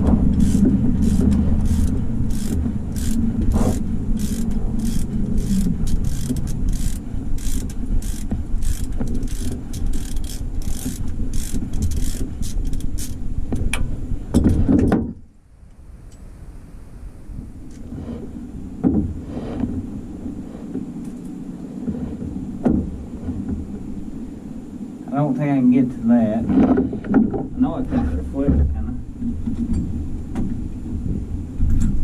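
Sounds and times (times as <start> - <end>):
low steady rumble: 0.0 - 32.0
ratchet wrench clicking: 0.4 - 13.2.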